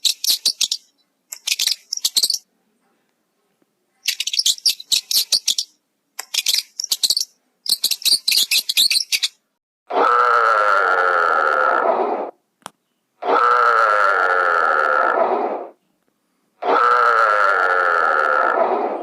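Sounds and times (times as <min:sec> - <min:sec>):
small bird chirping: 0:00.0 - 0:02.5, 0:04.0 - 0:09.4
harsh animal call: 0:09.9 - 0:12.4, 0:13.2 - 0:15.8, 0:16.6 - 0:19.0.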